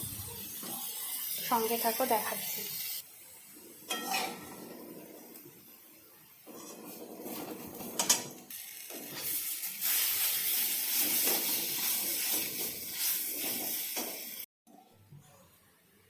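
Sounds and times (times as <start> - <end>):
food sizzling in oil: 0.0 - 14.5
spatula scraping a pan: 3.7 - 5.4, 6.5 - 8.2.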